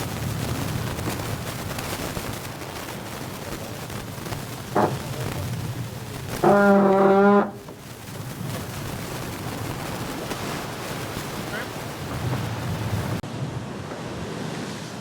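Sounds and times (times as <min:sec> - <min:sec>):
water noise: 0:00.0 - 0:15.0
wind: 0:00.0 - 0:15.0
horn toot and blast: 0:06.4 - 0:07.6.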